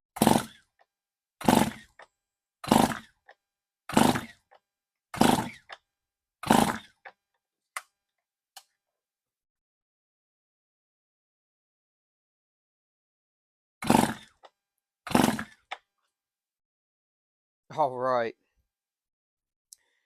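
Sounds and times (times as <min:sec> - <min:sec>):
chainsaw recoil starter pulls: 0:00.2 - 0:04.6, 0:05.2 - 0:05.8, 0:06.4 - 0:07.2, 0:13.8 - 0:15.9.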